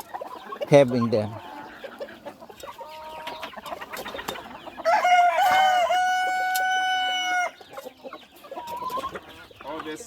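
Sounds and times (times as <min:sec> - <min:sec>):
hens clucking: 0:00.0 - 0:10.0
rooster crowing: 0:04.8 - 0:07.6.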